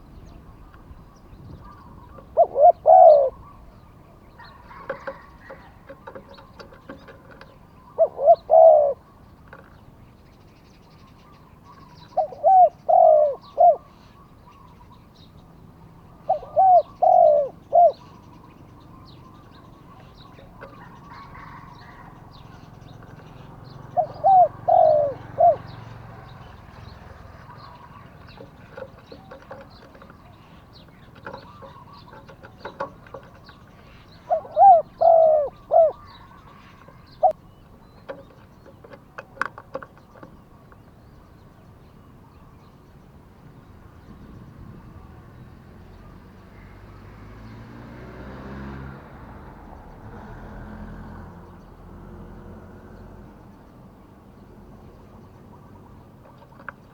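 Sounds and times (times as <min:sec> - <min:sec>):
dove cooing: 0:00.0 - 0:09.6, 0:11.2 - 0:15.0, 0:15.8 - 0:37.5
small birds chirping faintly: 0:00.0 - 0:56.9.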